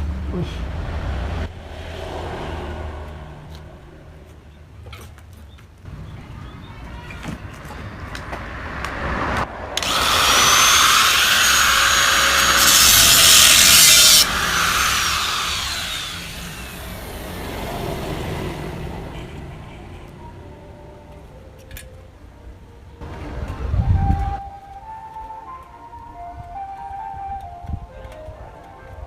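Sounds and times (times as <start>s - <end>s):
grinder disc spinning down: 9.8s - 17.4s
angle grinder on metal: 9.8s - 17.6s.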